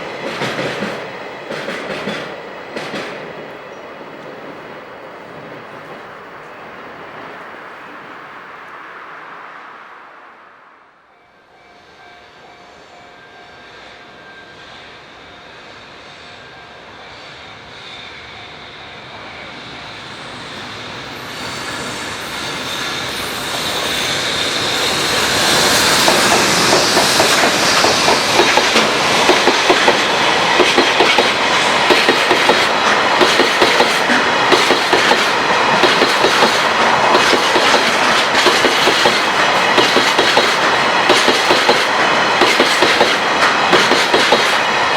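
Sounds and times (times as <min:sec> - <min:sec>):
freight train approaching: 0:00.0 - 0:44.9
wagon wheels clacking over rail joints: 0:26.0 - 0:44.7.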